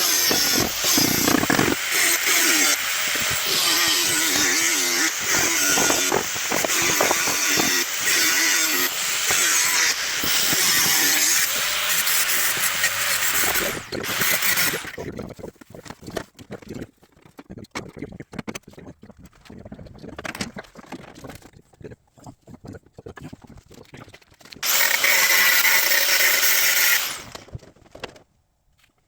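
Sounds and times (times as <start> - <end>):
grinder cutting sheet steel: 0.0 - 15.0, 24.6 - 27.5.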